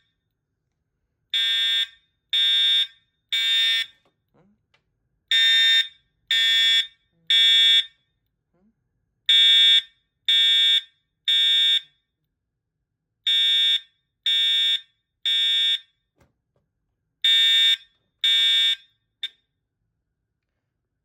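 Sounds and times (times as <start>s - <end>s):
fire alarm horn blasts: 1.3s - 4.1s, 5.3s - 8.1s, 9.3s - 12.1s, 13.2s - 16.1s, 17.2s - 19.4s.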